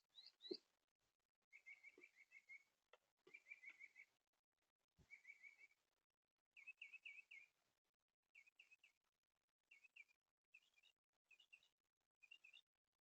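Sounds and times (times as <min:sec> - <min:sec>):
faint bird chirping: 0:00.0 - 0:00.7, 0:01.5 - 0:04.2, 0:05.0 - 0:05.8, 0:06.6 - 0:07.6, 0:09.7 - 0:12.7.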